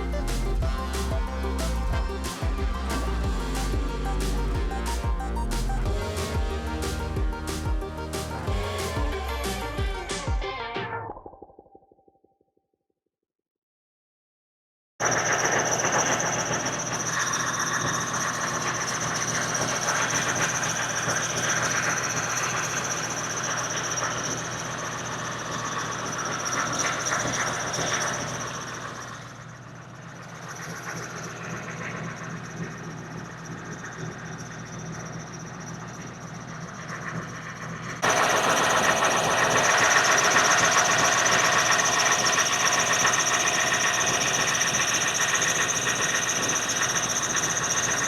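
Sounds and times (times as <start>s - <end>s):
diesel truck engine driving: 0.0s - 10.2s
steady high whine: 0.0s - 11.0s, 15.0s - 48.0s.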